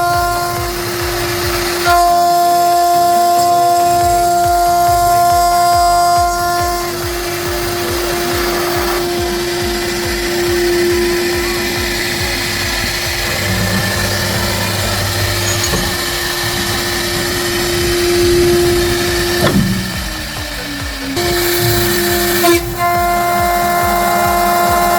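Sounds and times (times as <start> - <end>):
milling machine spindle whine: 0.0 - 24.9.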